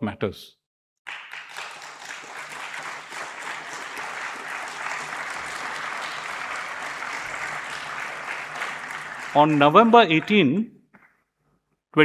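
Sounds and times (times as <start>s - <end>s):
audience applauding: 1.1s - 10.6s.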